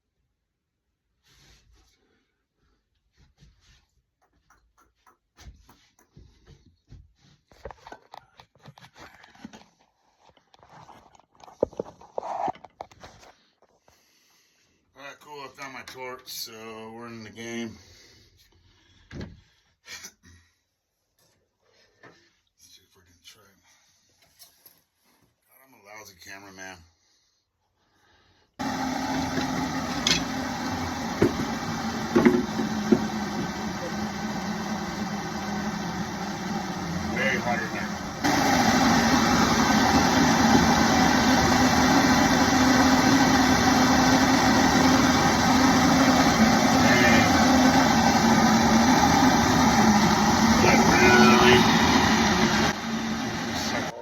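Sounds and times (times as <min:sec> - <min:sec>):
gas torch hissing: 0:28.6 - 0:53.9.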